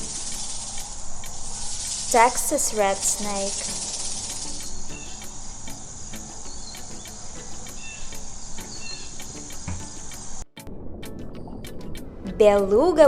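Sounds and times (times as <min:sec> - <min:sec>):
insect trilling: 0:00.0 - 0:10.4.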